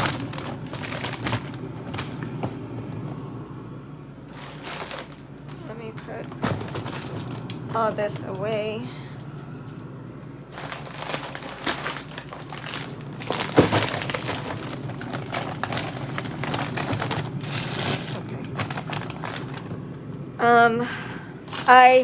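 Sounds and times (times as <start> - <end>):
plastic packages crinkling: 0.0 - 2.6, 4.2 - 8.6, 10.5 - 19.8, 21.5 - 22.0.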